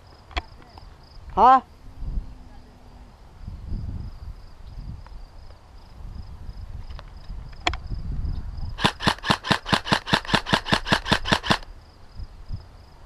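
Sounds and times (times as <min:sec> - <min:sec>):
airsoft gun firing: 0:08.8 - 0:11.7.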